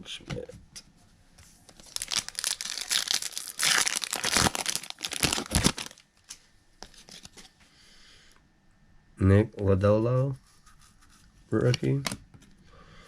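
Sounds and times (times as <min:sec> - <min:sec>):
plastic wrapper crinkling and tearing: 0:01.7 - 0:07.5.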